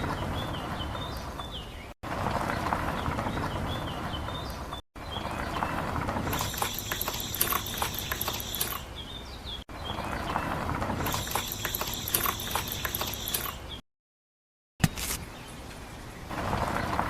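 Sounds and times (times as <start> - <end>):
small mechanism rattling and clicking: 6.3 - 8.9, 11.0 - 13.6.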